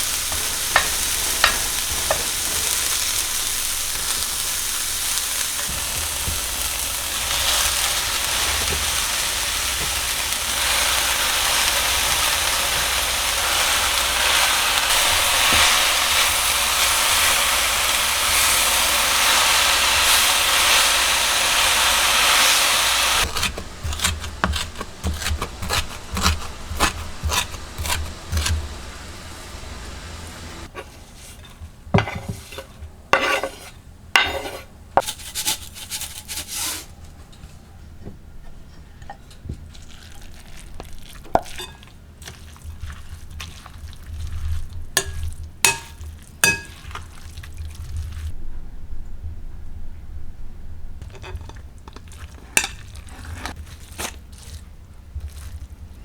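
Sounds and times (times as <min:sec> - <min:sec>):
utensil clinking on cookware: 0:00.0 - 0:03.2, 0:45.0 - 0:47.1, 0:51.0 - 0:53.0
loud steady hiss: 0:00.0 - 0:30.7
stirring in a pan: 0:00.0 - 0:37.0, 0:39.0 - 0:48.4, 0:51.0 - 0:56.0.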